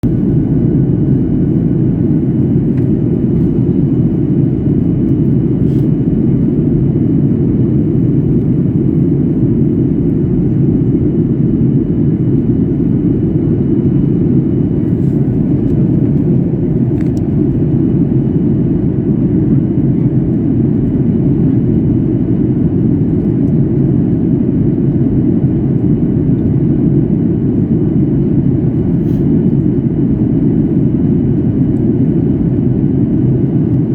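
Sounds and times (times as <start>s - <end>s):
airliner cabin rumble: 0.0s - 33.9s.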